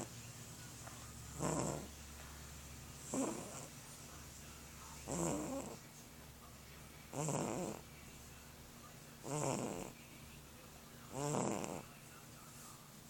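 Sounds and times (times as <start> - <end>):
cat snoring: 1.3 - 2.0, 3.1 - 3.7, 5.0 - 5.8, 7.1 - 7.9, 9.2 - 10.0, 11.1 - 11.9.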